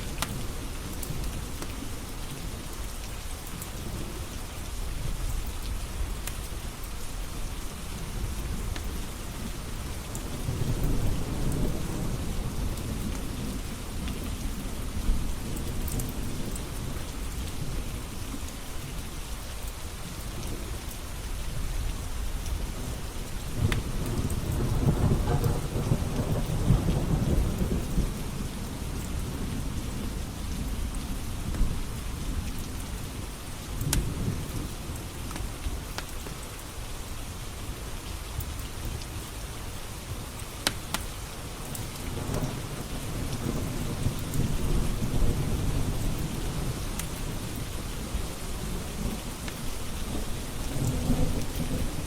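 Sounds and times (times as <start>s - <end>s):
steady rain: 0.0s - 52.0s
thunder rumbling: 22.7s - 32.4s, 42.1s - 52.0s.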